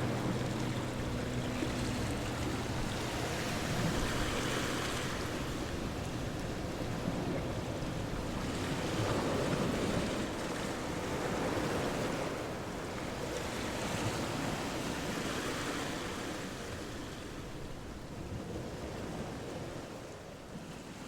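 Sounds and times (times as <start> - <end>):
steady rushing noise: 0.0 - 9.3.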